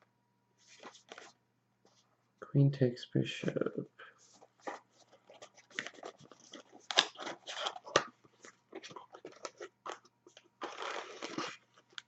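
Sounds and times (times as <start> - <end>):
packaging crackling and clicking: 5.3 - 12.0.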